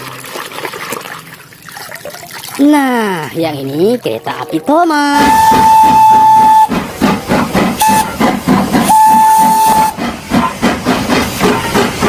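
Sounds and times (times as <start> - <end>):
steam whistle: 5.2 - 6.8, 7.8 - 10.1
steam locomotive chuffing: 5.2 - 12.0.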